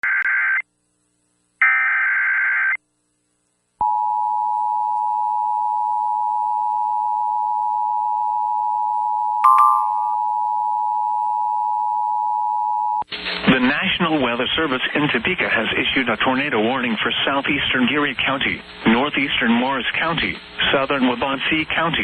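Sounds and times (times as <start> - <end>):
high beep: 9.4 - 11.1
two-tone attention signal: 9.4 - 11.1.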